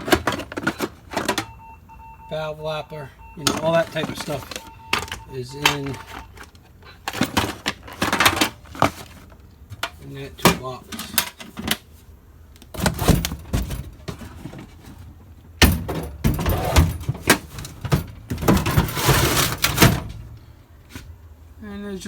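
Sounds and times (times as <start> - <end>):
metal tools clanking: 3.3 - 8.7
metal scraping rattle: 15.8 - 20.2.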